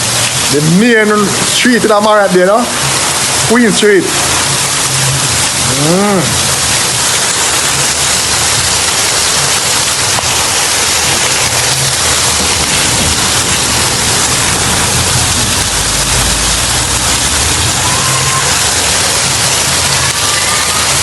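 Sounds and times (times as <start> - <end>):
heavy rain hissing: 0.0 - 21.0
low rumble: 10.8 - 20.1.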